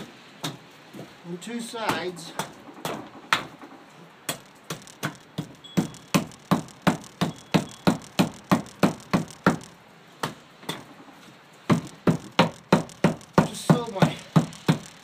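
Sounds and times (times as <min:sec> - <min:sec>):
blade chopping into wood: 0:11.7 - 0:15.0.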